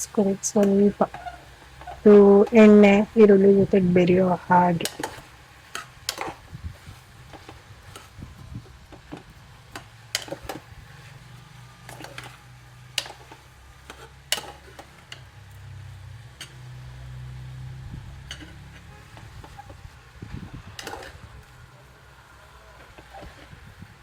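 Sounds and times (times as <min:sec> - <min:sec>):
vegetables frying in oil: 0:00.0 - 0:24.0
spoon scraping metal pot: 0:00.5 - 0:06.4, 0:11.8 - 0:15.2, 0:20.8 - 0:21.3
low steady hum: 0:02.0 - 0:05.2.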